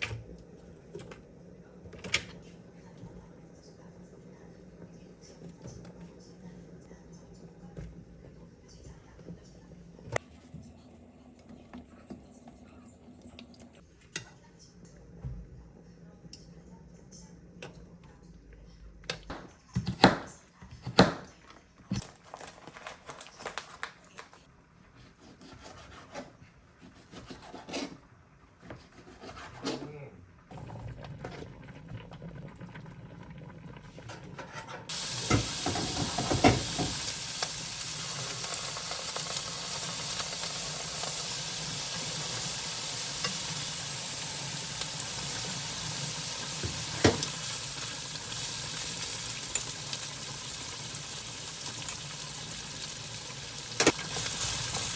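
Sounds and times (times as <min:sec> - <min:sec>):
food sizzling in a pan: 0:34.9 - 0:54.9.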